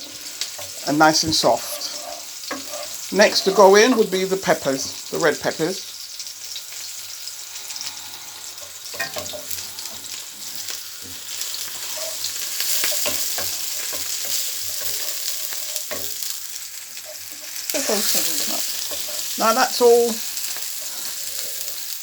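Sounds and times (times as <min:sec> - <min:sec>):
vegetables sizzling in a frying pan: 0:00.0 - 0:22.0.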